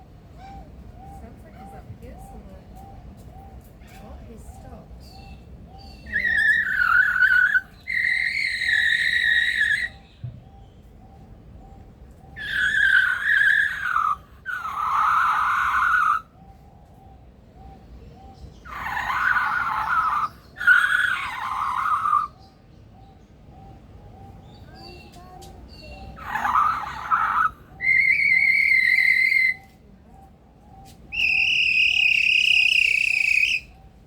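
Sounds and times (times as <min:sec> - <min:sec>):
bird harsh rasping calls: 0:25.8 - 0:29.6.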